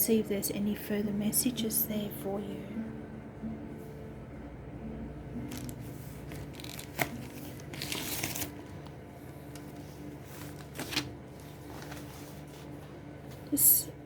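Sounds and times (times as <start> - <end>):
paper pages turning: 5.5 - 13.4.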